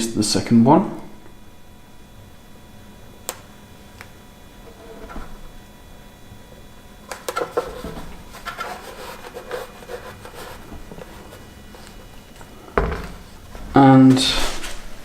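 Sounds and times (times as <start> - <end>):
scratchy rubbing of sticker: 7.5 - 12.3.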